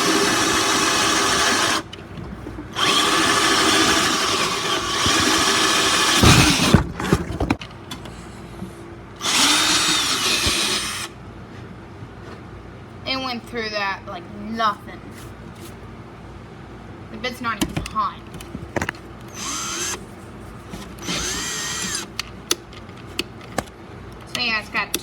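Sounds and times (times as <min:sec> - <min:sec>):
cordless drill boring wood: 0:00.0 - 0:01.9, 0:02.8 - 0:06.8, 0:09.2 - 0:11.1, 0:19.3 - 0:20.0, 0:21.0 - 0:22.1
drill bit knocking: 0:00.0 - 0:01.9, 0:02.8 - 0:06.8, 0:09.2 - 0:11.1, 0:18.7 - 0:20.0, 0:21.0 - 0:22.3.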